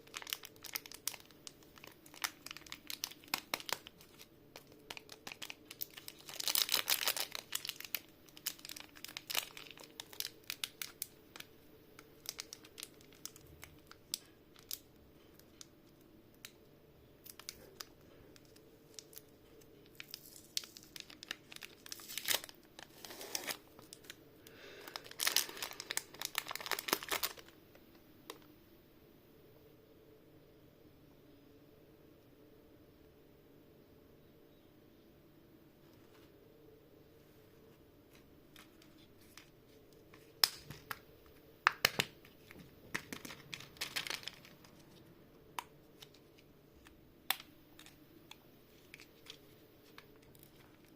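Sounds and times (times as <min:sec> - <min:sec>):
crunching candy shells: 0:00.0 - 0:16.6, 0:17.2 - 0:27.6, 0:38.5 - 0:45.0.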